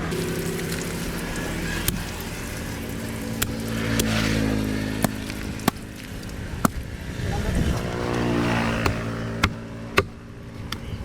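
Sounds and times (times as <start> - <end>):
motor running: 0.0 - 11.0
sharp knocks: 8.8 - 10.9.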